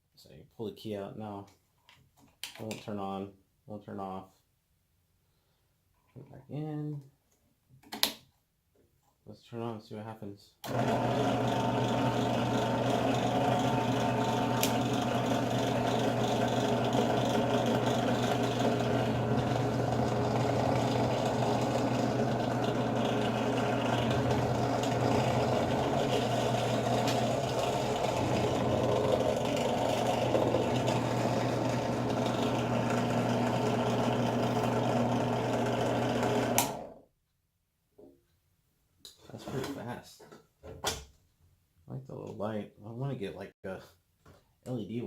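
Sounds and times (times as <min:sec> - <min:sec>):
belt and spindle whir: 0:10.7 - 0:37.0
drill press motor hum: 0:10.7 - 0:37.0.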